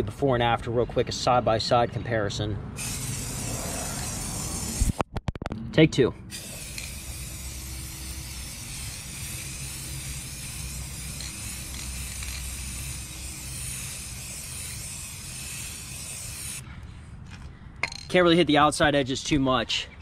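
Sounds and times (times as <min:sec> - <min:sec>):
spray paint can hissing: 0:02.8 - 0:05.0, 0:06.3 - 0:16.6.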